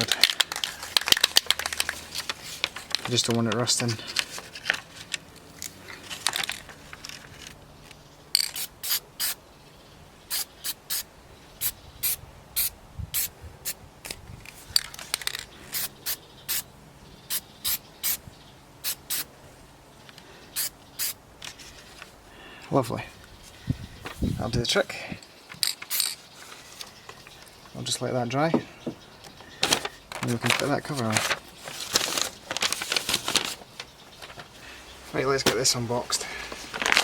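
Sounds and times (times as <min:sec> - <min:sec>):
spray paint can hissing: 0:08.4 - 0:09.4, 0:10.3 - 0:13.3, 0:15.7 - 0:16.6, 0:18.8 - 0:19.3, 0:20.6 - 0:21.2.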